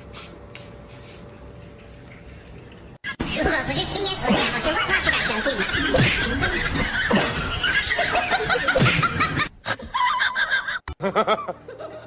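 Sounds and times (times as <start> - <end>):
people laughing: 4.2 - 12.0.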